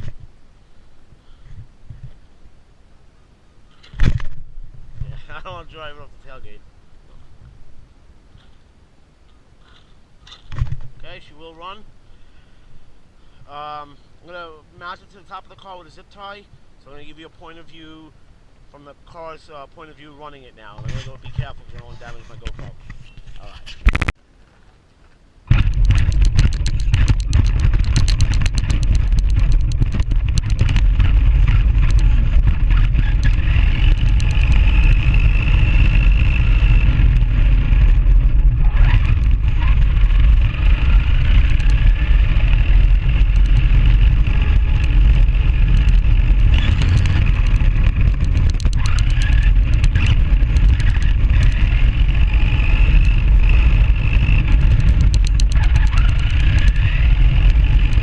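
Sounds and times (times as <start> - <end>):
heavy rumble: 25.4 - 58.0
chassis and tyres rattling: 25.5 - 58.0
electric motor whining: 25.5 - 58.0.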